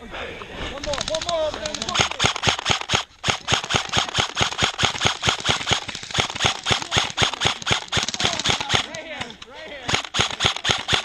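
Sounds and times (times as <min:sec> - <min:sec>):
airsoft gun firing rapidly: 0:00.8 - 0:09.3, 0:09.9 - 0:11.0.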